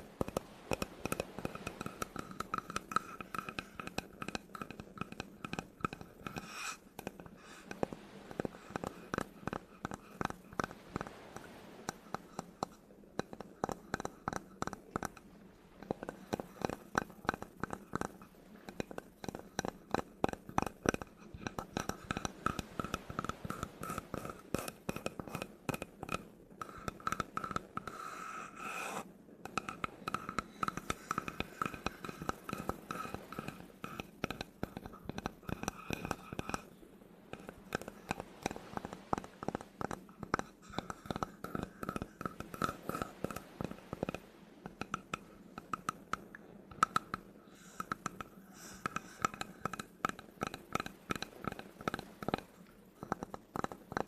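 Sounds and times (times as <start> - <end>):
tapping and scratching on wood: 16.0 - 18.2.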